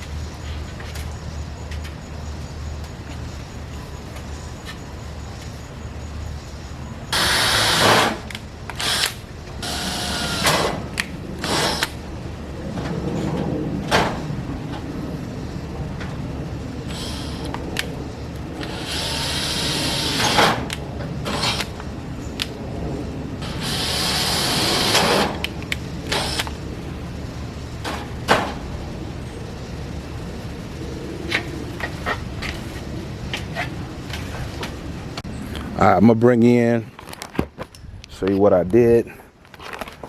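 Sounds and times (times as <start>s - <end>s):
power drill on metal panels: 7.1s - 12.1s, 16.8s - 17.9s, 18.5s - 21.9s, 23.4s - 26.7s.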